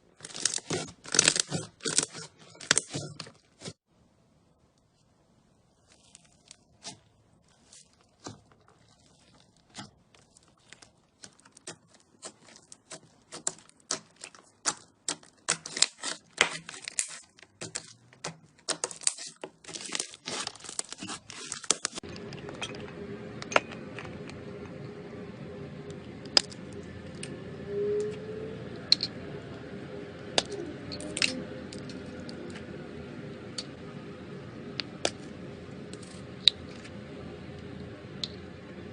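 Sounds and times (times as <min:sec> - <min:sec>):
crunchy slime crackling and popping: 0:00.0 - 0:03.7, 0:05.8 - 0:22.4.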